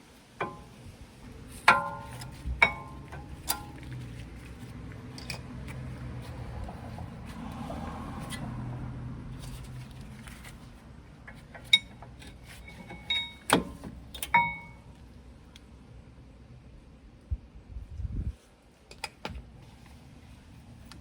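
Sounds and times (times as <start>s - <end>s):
short metallic ring: 12.6s - 13.5s, 14.3s - 14.8s.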